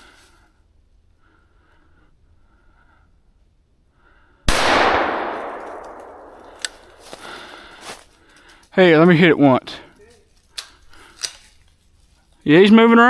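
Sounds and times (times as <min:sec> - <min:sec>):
gunshot echoing: 0:04.5 - 0:07.7.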